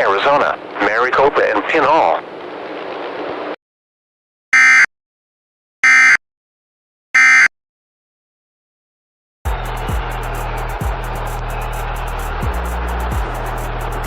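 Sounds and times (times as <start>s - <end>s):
radio programme audio: 0.0s - 2.2s.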